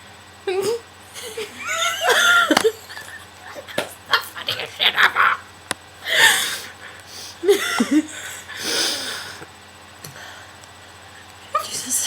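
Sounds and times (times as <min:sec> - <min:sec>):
wheezing laughter and gasps: 0:01.1 - 0:05.4, 0:06.0 - 0:09.5.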